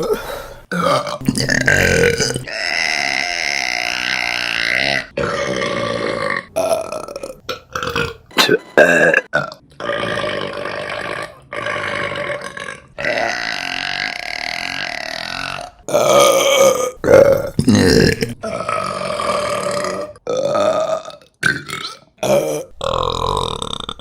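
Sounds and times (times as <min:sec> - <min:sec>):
women burping: 0:08.0 - 0:09.6.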